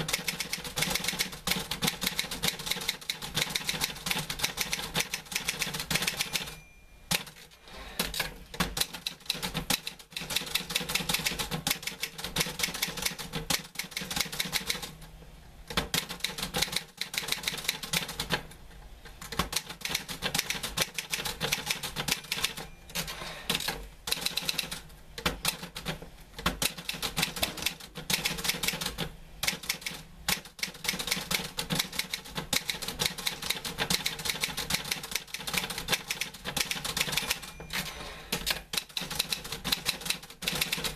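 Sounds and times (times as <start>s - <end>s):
typewriter key strikes: 26.4s - 40.9s.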